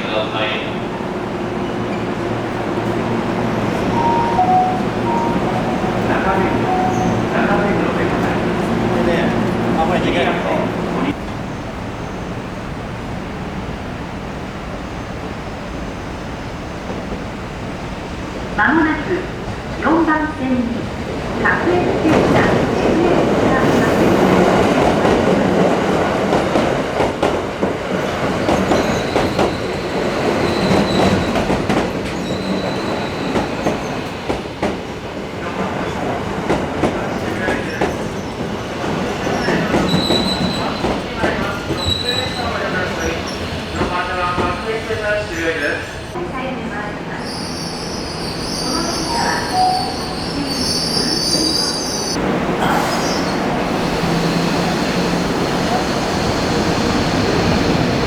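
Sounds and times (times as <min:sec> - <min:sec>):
train wheels rumbling on rails: 0:00.0 - 0:58.0
train wheels squealing: 0:06.1 - 0:07.7, 0:28.4 - 0:34.2, 0:39.1 - 0:43.8, 0:47.1 - 0:52.2
faint wheel squeal: 0:41.8 - 0:43.5, 0:47.2 - 0:52.2.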